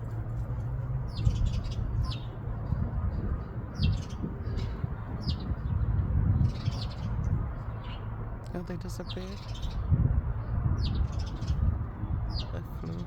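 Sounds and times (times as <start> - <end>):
low microphone rumble: 0.0 - 13.0
small birds chirping: 0.0 - 13.0.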